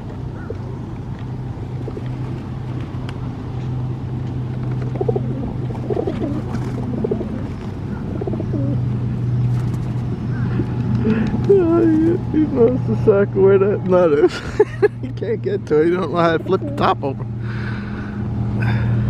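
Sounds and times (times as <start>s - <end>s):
low engine hum: 0.0s - 19.0s
pigeons cooing: 0.3s - 0.9s, 1.6s - 3.4s, 4.5s - 12.1s.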